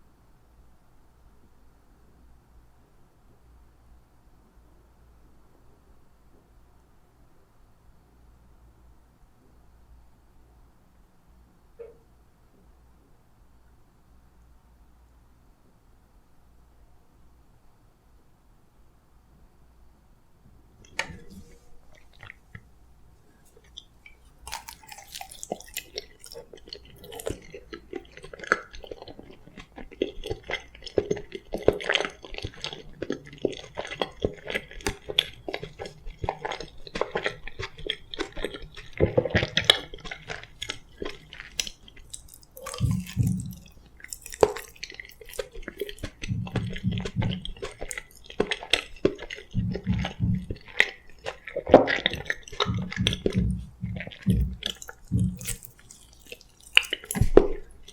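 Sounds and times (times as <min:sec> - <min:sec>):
person chewing food: 0:20.8 - 0:57.9
low rumbles: 0:52.6 - 0:55.5.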